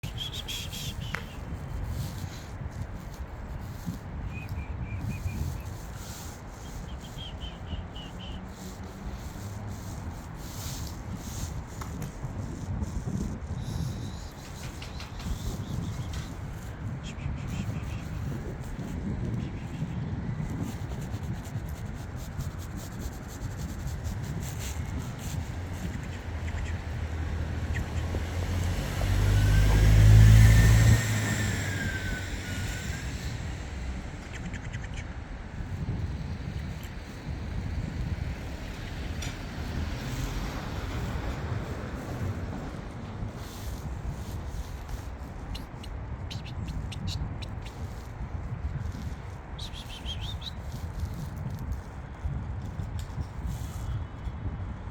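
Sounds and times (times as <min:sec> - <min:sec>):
car passing by: 0:25.6 - 0:34.2, 0:37.9 - 0:45.1.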